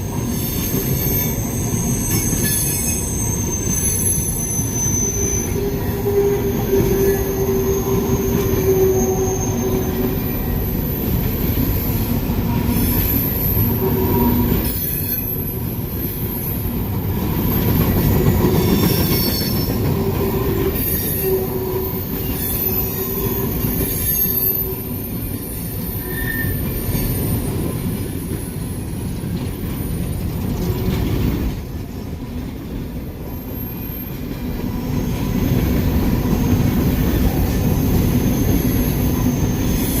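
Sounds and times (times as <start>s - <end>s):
steel wheels squealing on rail: 0.0s - 40.0s
train rolling past: 0.0s - 40.0s.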